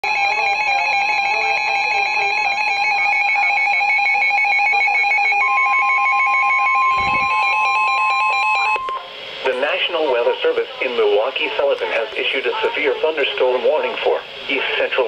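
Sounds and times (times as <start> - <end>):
steady alarm tone: 0.0 - 9.1.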